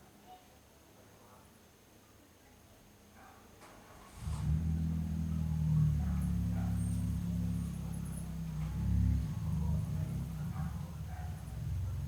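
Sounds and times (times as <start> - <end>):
low motor hum: 4.2 - 12.0.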